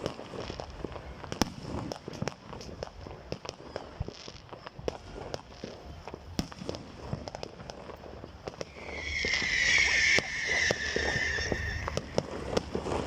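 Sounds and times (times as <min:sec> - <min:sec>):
fireworks crackling: 0:00.0 - 0:13.0.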